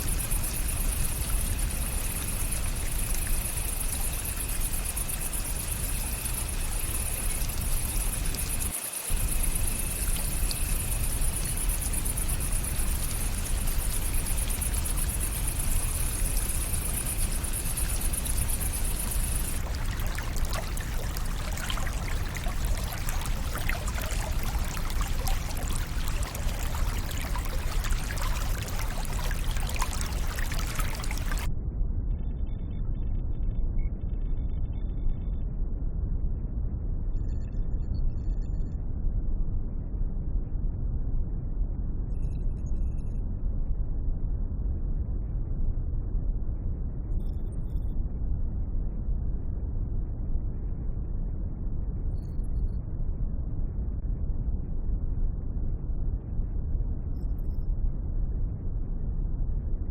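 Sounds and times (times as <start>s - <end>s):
water rushing: 12.8s - 31.5s.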